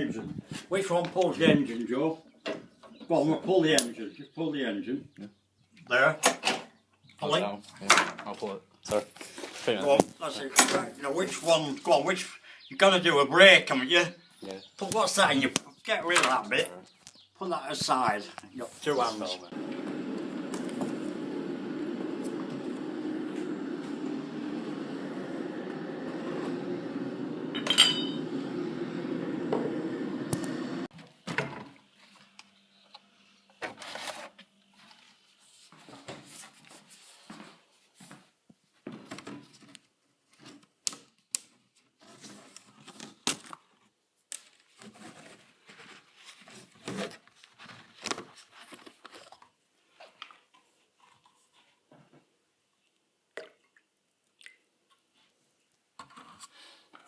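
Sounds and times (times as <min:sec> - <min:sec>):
low rumbling noise: 0:19.4 - 0:30.9.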